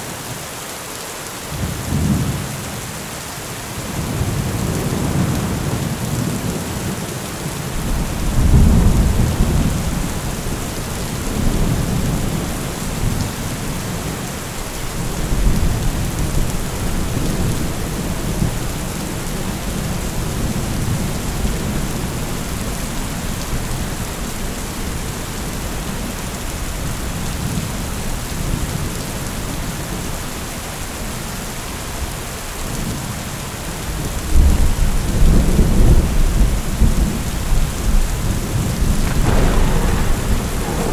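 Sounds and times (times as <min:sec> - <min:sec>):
heavy rain pouring: 0:00.0 - 0:40.9
thunder rumbling: 0:07.7 - 0:23.8, 0:34.3 - 0:40.9.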